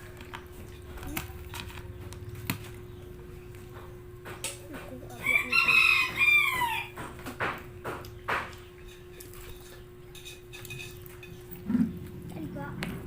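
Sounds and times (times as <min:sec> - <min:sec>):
rooster crowing: 0:05.1 - 0:07.1.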